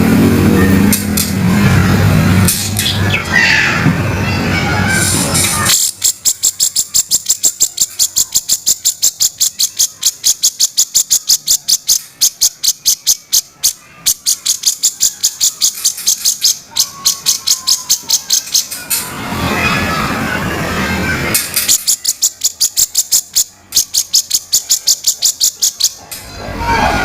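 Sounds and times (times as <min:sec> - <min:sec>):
bird's harsh rasping call: 0:04.9 - 0:18.8, 0:21.5 - 0:26.1.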